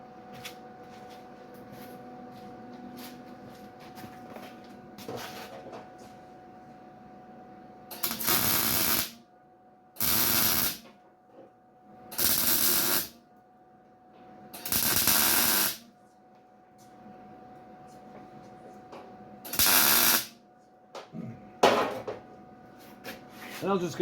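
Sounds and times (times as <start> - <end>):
welder arc crackling hiss: 7.9 - 9.2, 10.0 - 10.8, 12.2 - 13.2, 14.6 - 15.8, 19.5 - 20.4
steady thin hum: 15.7 - 19.5.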